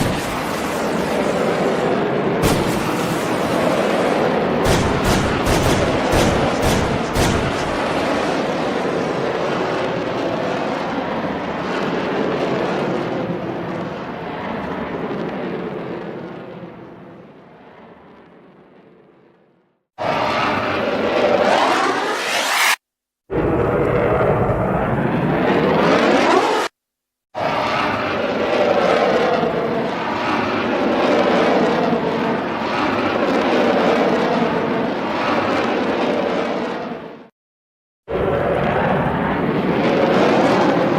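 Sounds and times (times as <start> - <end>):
steady rushing roar: 0.0 - 11.6, 20.0 - 22.8.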